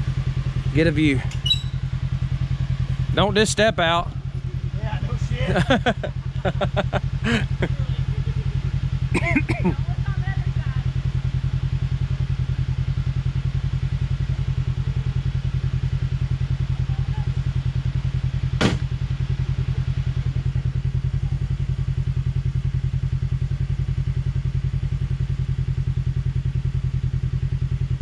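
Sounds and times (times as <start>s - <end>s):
engine idling: 0.0s - 28.0s
sharp knock: 18.6s - 18.9s.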